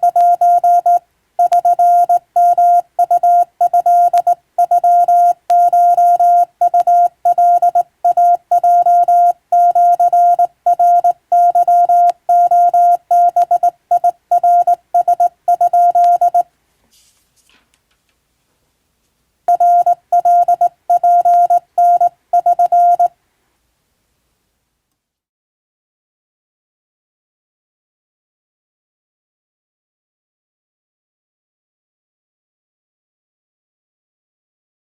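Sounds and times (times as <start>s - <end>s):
morse code beeps: 0.0s - 16.4s, 19.5s - 23.1s.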